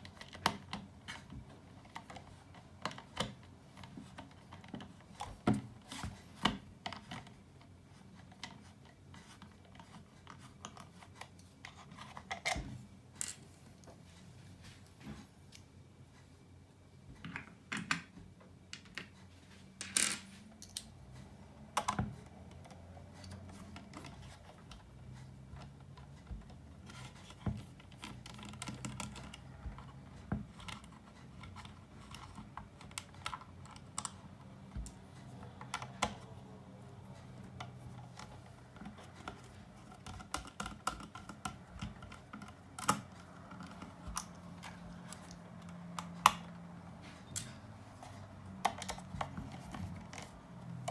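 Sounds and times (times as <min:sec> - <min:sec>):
clicks and taps of parts and tools: 0:17.2 - 0:19.2, 0:19.8 - 0:21.0, 0:25.6 - 0:46.6, 0:48.4 - 0:50.9.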